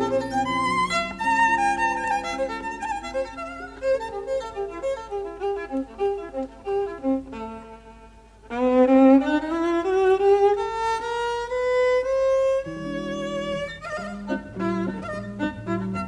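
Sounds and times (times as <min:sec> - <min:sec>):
guitar chords: 0:00.0 - 0:04.5, 0:12.6 - 0:16.0
jazz violin playing: 0:00.0 - 0:16.0.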